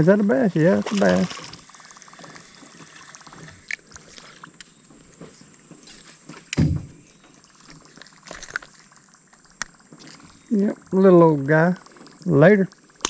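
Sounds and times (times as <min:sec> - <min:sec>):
faint water splashes: 0:00.0 - 0:13.0
deep thump on boat: 0:06.5 - 0:07.0.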